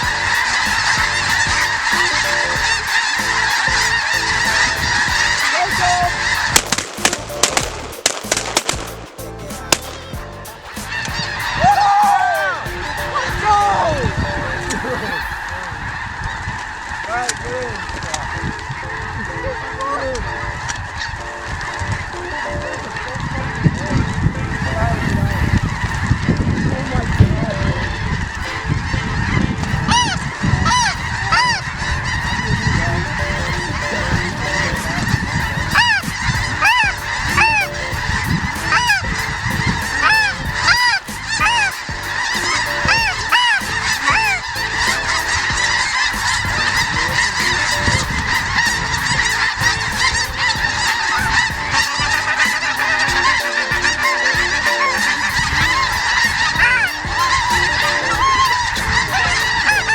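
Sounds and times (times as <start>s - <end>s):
geese honking chorus: 0.0s - 8.5s, 10.0s - 59.9s
low rumble: 23.9s - 47.2s.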